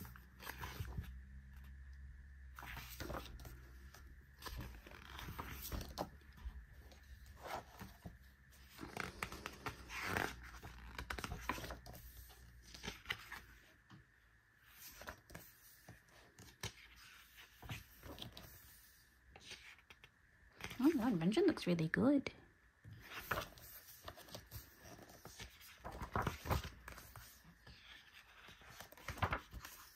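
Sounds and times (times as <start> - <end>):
paper and plastic rustling: 23.0 - 29.9.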